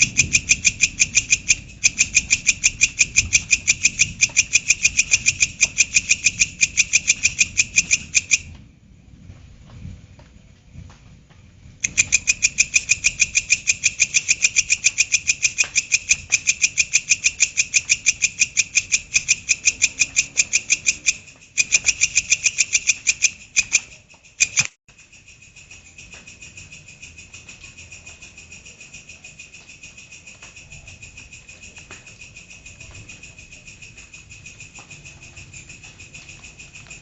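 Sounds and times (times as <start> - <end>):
insect rasping chirps: 0.0 - 8.5, 11.8 - 27.4.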